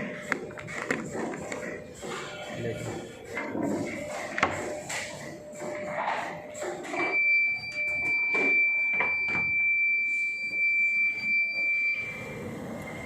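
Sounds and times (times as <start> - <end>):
electronic alarm buzzer tone: 6.9 - 13.0.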